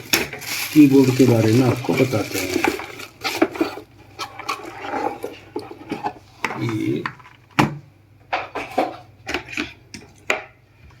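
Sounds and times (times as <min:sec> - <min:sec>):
cardboard and plastic handling: 0:00.0 - 0:07.8.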